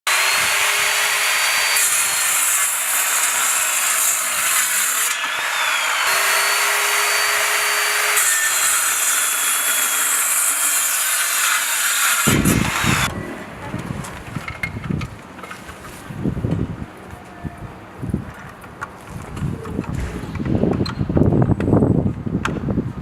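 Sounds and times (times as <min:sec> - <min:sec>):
circular saw cutting wood: 0:00.0 - 0:13.1.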